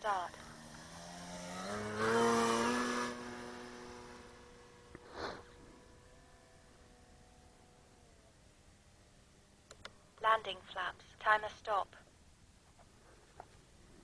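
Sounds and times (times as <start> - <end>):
model plane electric motor whine: 0.5 - 9.3.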